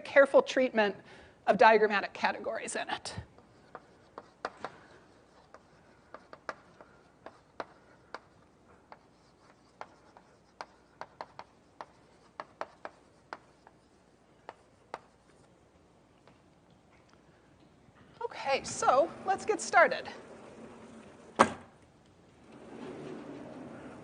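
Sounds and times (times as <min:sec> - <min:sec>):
chalk tapping and scraping on board: 0:03.4 - 0:15.6.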